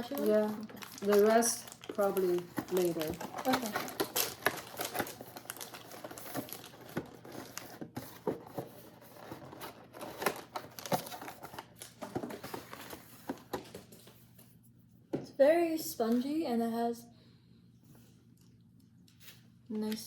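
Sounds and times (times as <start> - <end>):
plastic wrapper crinkling: 0.0 - 8.2, 8.9 - 13.8.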